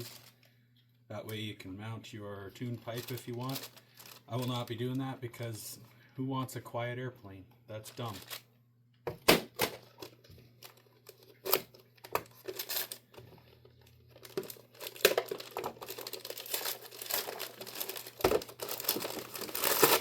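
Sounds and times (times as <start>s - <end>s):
packaging crinkling and rustling: 0.0s - 0.5s, 2.6s - 5.1s, 7.9s - 8.4s, 9.6s - 20.0s.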